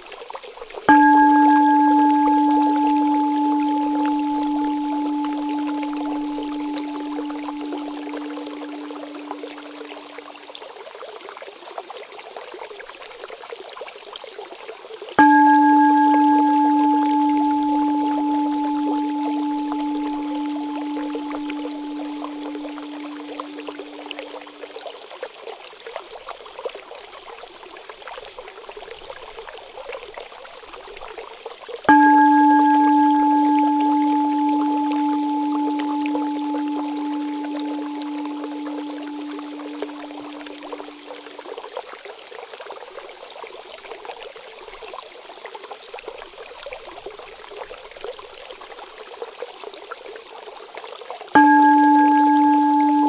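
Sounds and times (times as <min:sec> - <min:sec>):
trickling water splashing: 0:00.0 - 0:53.0
bell ringing: 0:00.9 - 0:10.0, 0:15.2 - 0:24.5, 0:31.9 - 0:41.2, 0:51.4 - 0:53.0.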